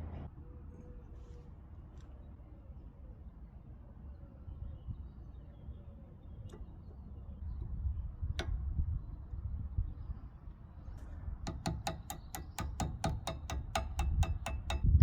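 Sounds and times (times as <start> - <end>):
sharp metallic clicks: 11.5 - 15.0.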